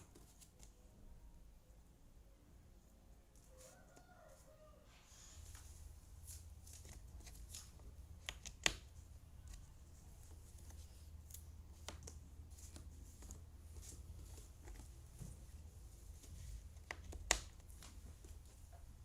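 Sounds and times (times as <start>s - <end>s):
steady low hum: 5.0s - 19.0s.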